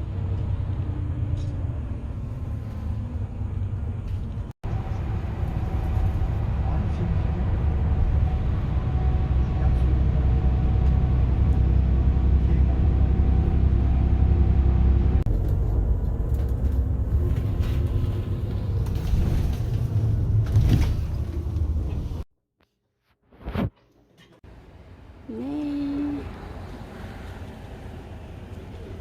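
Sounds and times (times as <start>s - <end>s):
vehicle rumble from inside: 0.0s - 22.3s, 24.5s - 29.0s.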